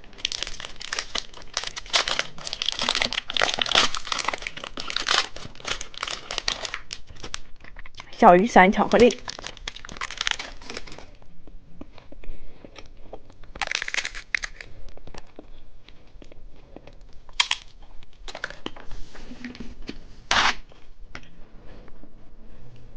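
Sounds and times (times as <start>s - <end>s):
candy wrapper crinkling and tearing: 0.0s - 8.2s, 8.8s - 11.2s, 12.8s - 18.8s.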